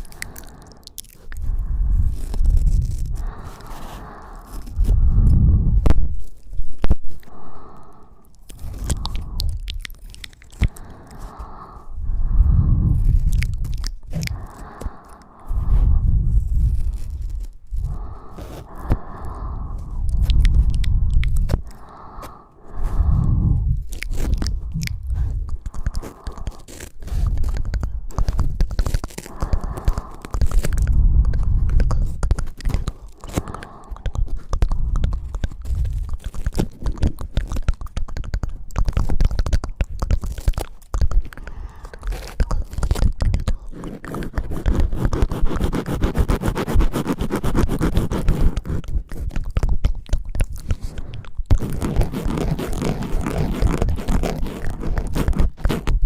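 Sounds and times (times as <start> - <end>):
scraping against microphone: 0.0 - 7.2, 8.4 - 37.5, 50.5 - 56.0
low rumbles: 0.1 - 37.5.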